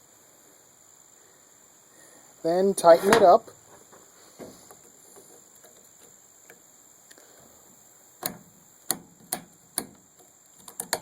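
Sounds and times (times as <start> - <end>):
sharp metal clicks: 8.2 - 11.0.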